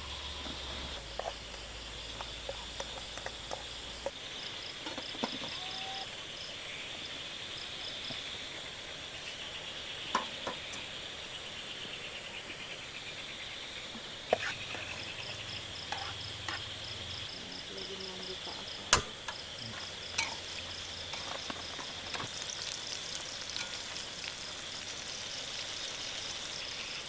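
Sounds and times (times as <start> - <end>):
forest insects chirring: 0.0 - 27.0
fast pulsed insect trill: 11.0 - 27.0.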